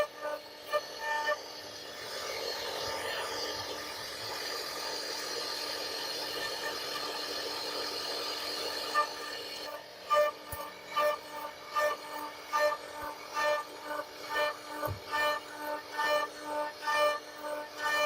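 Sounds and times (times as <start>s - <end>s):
router cutting wood: 0.0s - 4.8s, 8.4s - 18.0s
router spindle whining: 0.0s - 18.0s.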